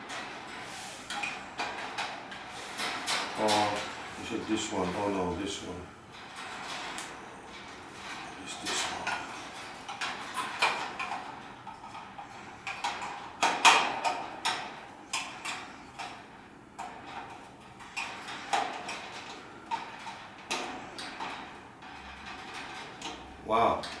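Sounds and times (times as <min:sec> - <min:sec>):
wire birdcage clicks and rattles: 0:06.2 - 0:24.0.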